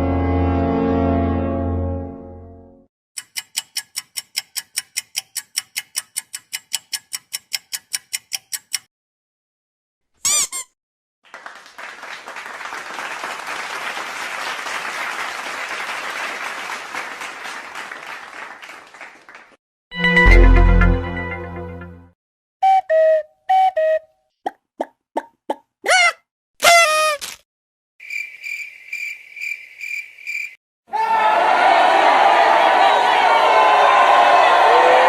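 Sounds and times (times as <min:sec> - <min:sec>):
ticking: 0:03.2 - 0:08.9
crowd applauding: 0:11.2 - 0:19.6, 0:31.1 - 0:35.0.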